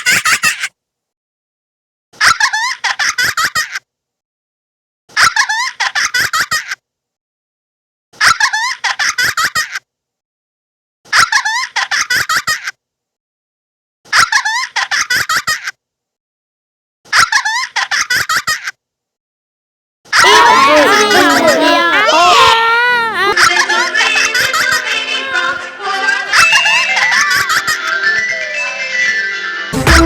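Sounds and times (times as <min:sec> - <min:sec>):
high-pitched giggling sound effect: 0:20.2 - 0:23.7, 0:26.8 - 0:27.9.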